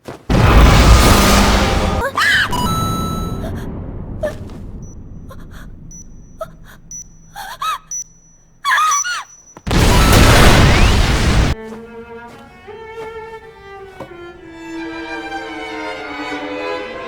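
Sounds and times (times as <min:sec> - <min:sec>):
loud burst of noise: 0:00.3 - 0:08.5, 0:09.7 - 0:11.6
pitched sounds bending up and down: 0:00.3 - 0:11.6
orchestral strings: 0:11.5 - 0:17.0.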